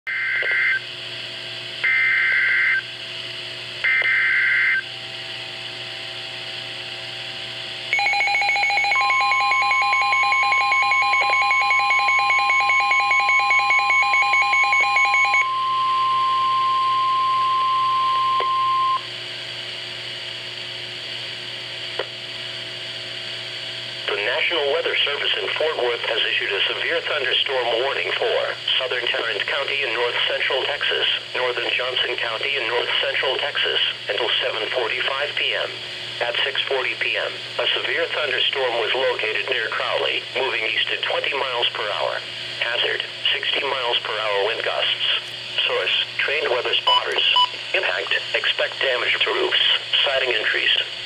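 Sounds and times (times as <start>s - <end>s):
steady single-pitched alarm tone: 3.8s - 5.4s, 7.2s - 19.1s.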